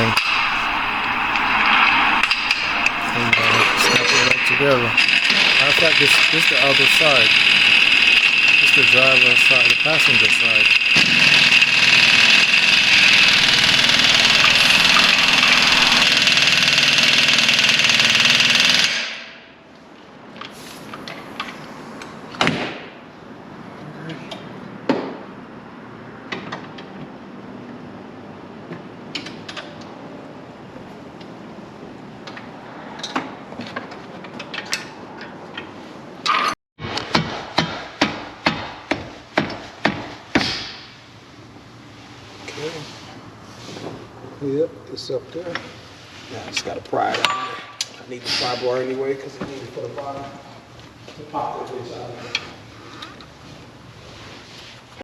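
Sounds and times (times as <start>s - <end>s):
hammer striking metal: 0.0s - 16.1s
power tool running: 0.0s - 18.9s.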